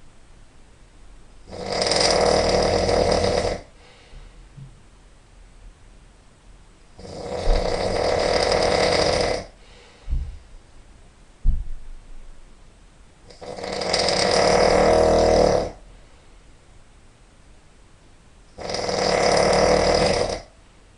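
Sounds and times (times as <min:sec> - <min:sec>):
person snoring loudly: 0:01.4 - 0:03.8, 0:07.0 - 0:09.7, 0:13.3 - 0:15.8, 0:18.6 - 0:20.5.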